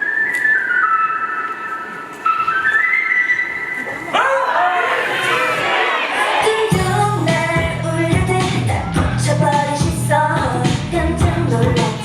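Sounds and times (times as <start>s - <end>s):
whistle-like melody over sound system: 0.0s - 4.1s.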